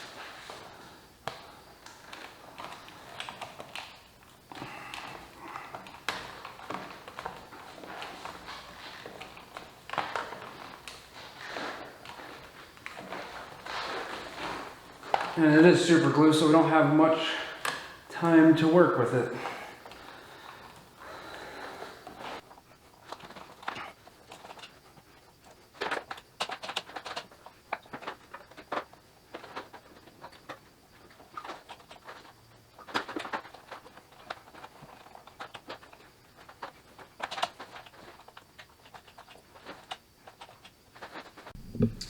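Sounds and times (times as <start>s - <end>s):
hands clicking tapping and rubbing: 41.6s - 42.0s.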